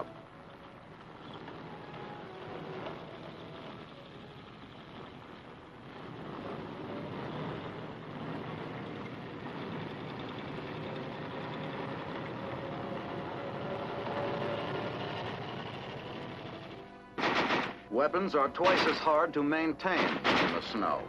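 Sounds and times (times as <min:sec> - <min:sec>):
film soundtrack music: 0:00.0 - 0:08.4, 0:12.9 - 0:21.0
steady rumble: 0:00.0 - 0:19.2
sudden loud bang: 0:17.2 - 0:17.9, 0:18.6 - 0:19.1, 0:20.0 - 0:20.9.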